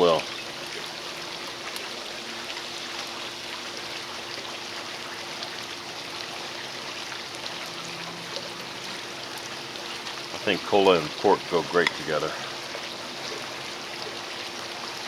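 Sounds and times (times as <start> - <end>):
faint steady hum: 0.0 - 15.0
liquid trickling onto meat: 0.0 - 15.0.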